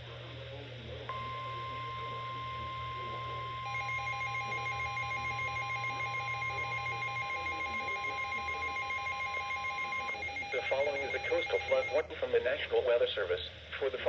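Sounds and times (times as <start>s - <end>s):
rapidly pulsing alert beeps: 1.1s - 12.0s
steady warning alarm tone: 1.1s - 12.0s.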